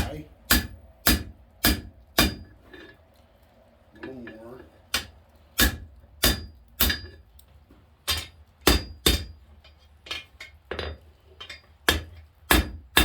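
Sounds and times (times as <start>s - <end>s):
hammer striking hot steel: 0.0s - 3.0s, 4.9s - 7.2s, 8.0s - 9.4s, 10.0s - 13.0s.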